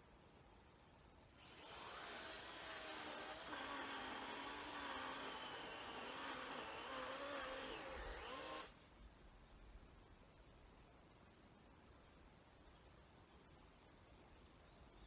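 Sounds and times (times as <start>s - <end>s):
electric chainsaw whining: 1.4s - 8.7s.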